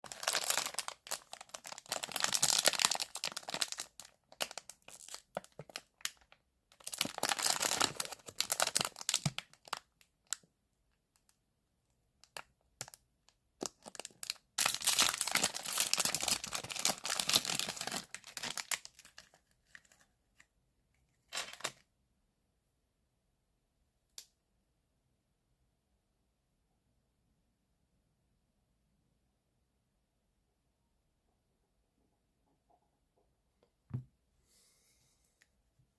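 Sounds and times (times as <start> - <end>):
wrapper crinkling and tearing: 0.0 - 10.4, 13.6 - 20.1, 21.2 - 21.8.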